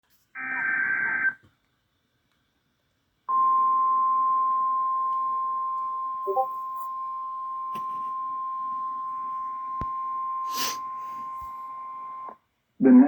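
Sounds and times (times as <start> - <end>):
steady alarm tone: 3.6 - 12.3.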